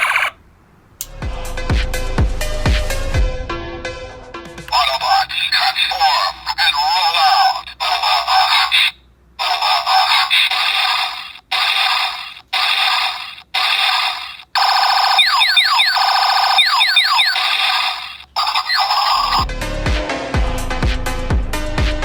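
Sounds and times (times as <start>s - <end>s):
toy robot electronic bursts: 0.0s - 0.4s, 4.7s - 19.4s
laser-like zaps: 10.4s - 15.4s.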